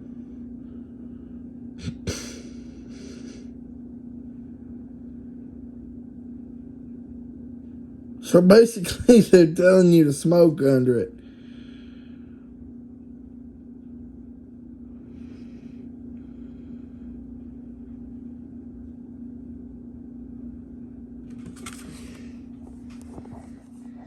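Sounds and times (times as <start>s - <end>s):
low background hum: 0.0s - 24.0s
rustling and handling noise: 21.3s - 24.0s.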